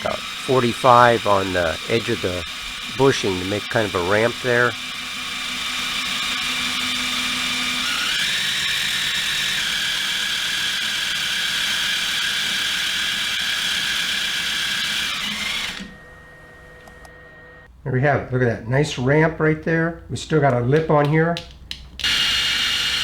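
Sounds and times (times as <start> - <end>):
rasp shaving rubber: 0.0 - 15.8
electric drill whining: 0.0 - 17.7, 22.0 - 23.0.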